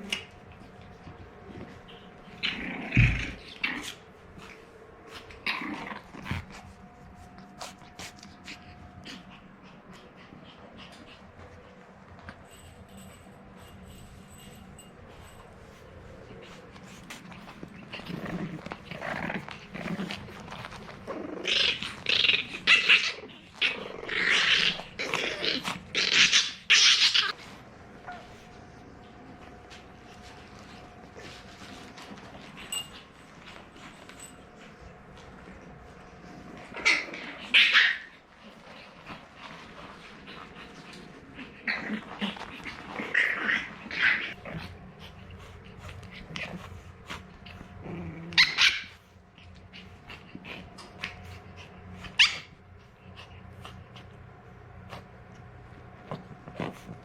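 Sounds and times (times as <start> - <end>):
puppy growling and grunting: 0.0 - 11.3, 16.4 - 28.5, 30.6 - 55.3.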